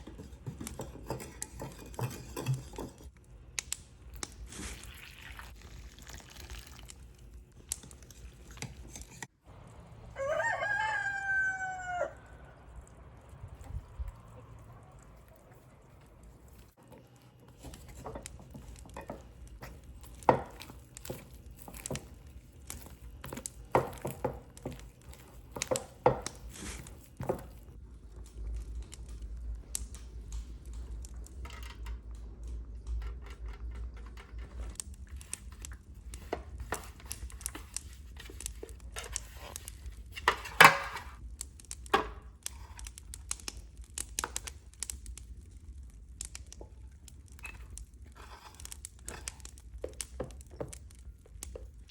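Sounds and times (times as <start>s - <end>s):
dishes and utensils clinking: 0.0s - 3.1s.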